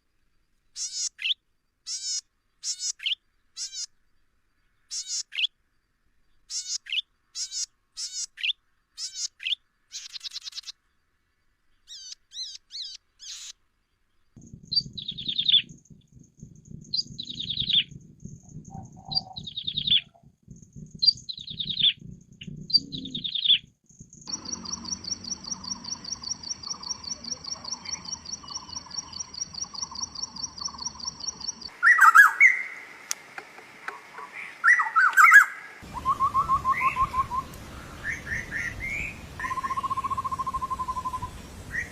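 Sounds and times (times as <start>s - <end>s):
songbirds chirping: 0.0s - 41.9s
loud chattering bird calls: 0.8s - 3.9s, 4.8s - 5.5s, 6.4s - 10.8s, 11.8s - 13.6s, 14.4s - 41.9s
fast even bird trill: 14.4s - 23.7s, 24.3s - 32.9s
falling whistled bird notes: 34.5s - 41.9s.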